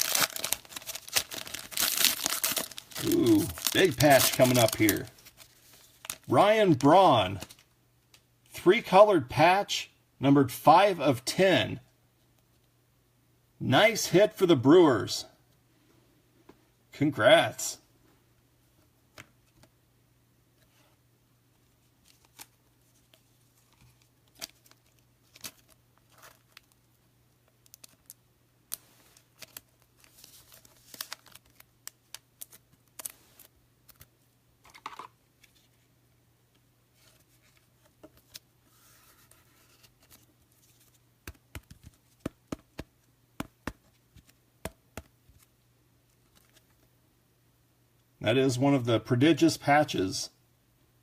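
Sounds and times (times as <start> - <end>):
wrapper tearing and crinkling: 0.0 - 6.3, 27.6 - 33.5
cards clicking and tapping: 41.2 - 45.5.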